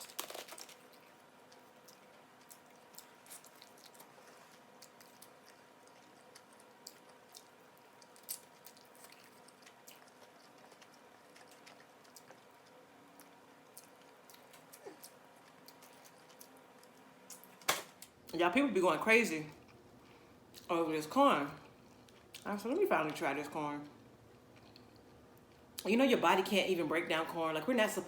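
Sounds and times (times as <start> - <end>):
person chewing and eating: 0.0 - 17.7
faint steady hum: 0.0 - 28.0.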